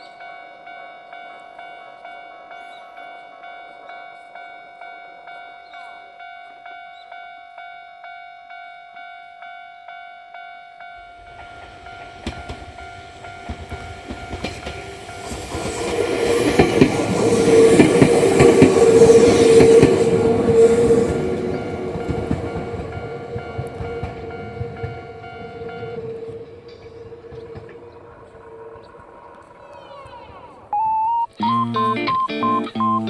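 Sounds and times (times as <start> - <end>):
electronic railway crossing bell: 0.0 - 29.5
electric train whine: 10.4 - 31.1
train wheel clatter: 11.0 - 30.5.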